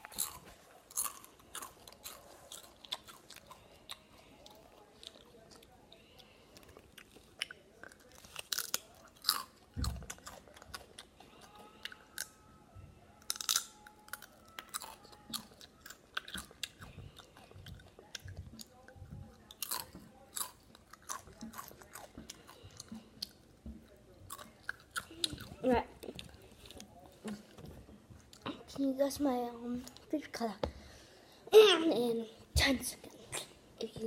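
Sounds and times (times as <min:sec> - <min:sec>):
chips crunching and chewing: 0:00.0 - 0:12.4, 0:13.2 - 0:27.0.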